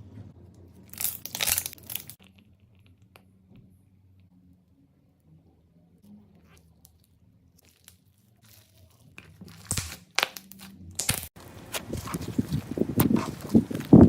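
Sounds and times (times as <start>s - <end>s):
slime crunching and crackling: 0.8s - 2.6s, 6.3s - 14.0s.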